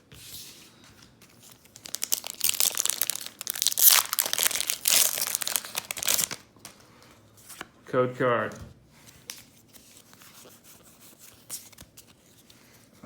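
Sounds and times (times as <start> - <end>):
foil wrapper crinkling and tearing: 1.4 - 6.5.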